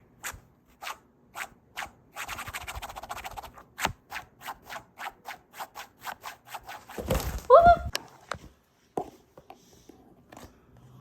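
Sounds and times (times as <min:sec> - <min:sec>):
scratching strokes on a surface: 0:00.2 - 0:07.0.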